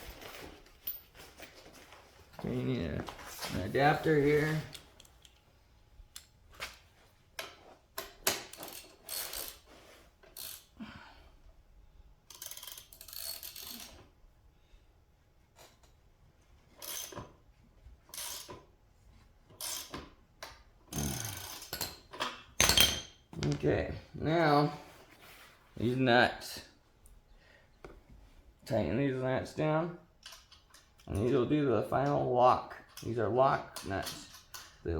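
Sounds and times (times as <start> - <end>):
ratchet wrench clinking and clicking: 8.0 - 9.6, 10.3 - 10.7, 12.3 - 14.0, 16.8 - 17.2, 18.1 - 18.6, 19.6 - 20.0, 20.9 - 22.0.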